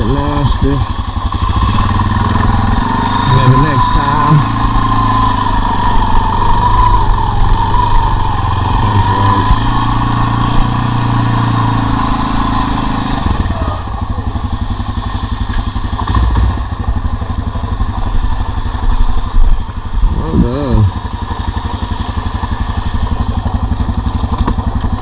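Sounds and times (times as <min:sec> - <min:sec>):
atv engine running: 0:00.0 - 0:25.0.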